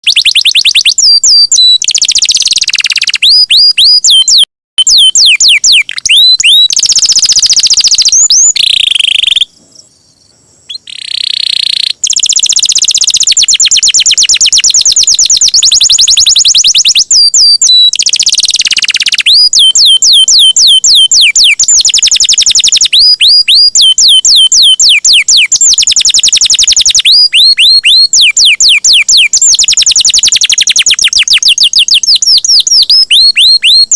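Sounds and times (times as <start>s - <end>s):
canary singing trills: 0.0s - 33.9s.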